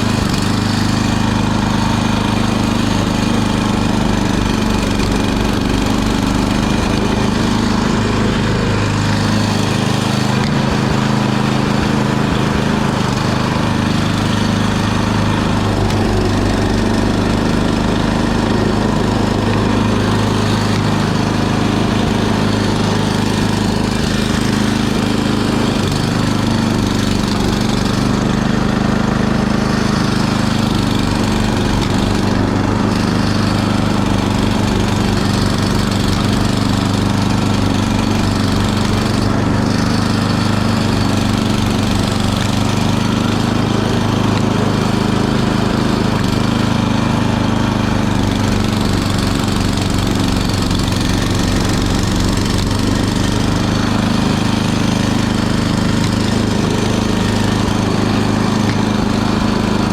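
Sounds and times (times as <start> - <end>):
snow blower engine running: 0.0 - 59.9.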